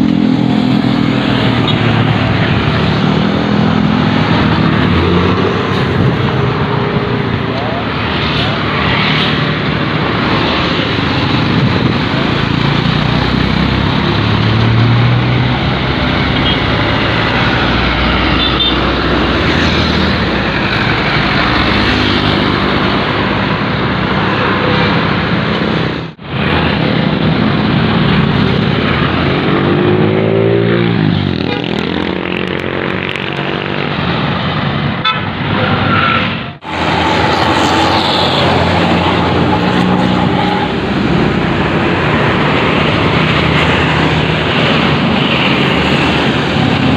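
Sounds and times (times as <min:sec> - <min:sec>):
engine and traffic noise: 0:00.0 - 0:46.9
multi-tone bus horns: 0:16.3 - 0:16.8, 0:18.3 - 0:19.0, 0:35.0 - 0:35.4, 0:36.8 - 0:39.6.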